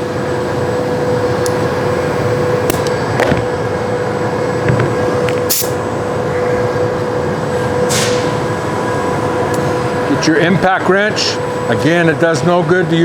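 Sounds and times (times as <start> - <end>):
machinery humming: 0.0 - 13.0
short sharp hiss: 5.5 - 5.8.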